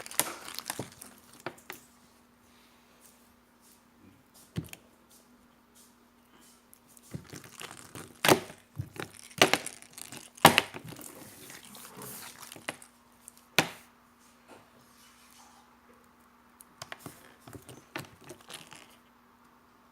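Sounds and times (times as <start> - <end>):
slime popping and crackling: 0.0 - 1.8, 7.1 - 13.8
faint crinkling: 0.0 - 19.1.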